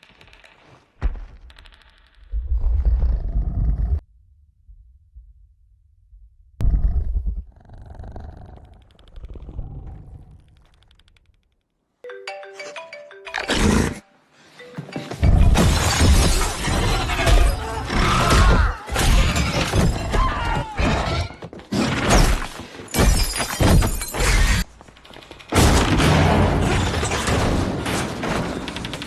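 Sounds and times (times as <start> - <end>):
loud crashes and shattering: 25.6 - 29.0.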